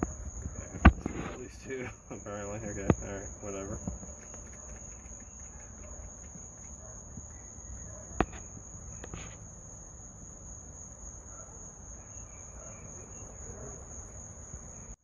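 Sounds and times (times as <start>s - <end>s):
crickets chirping: 0.0s - 15.0s.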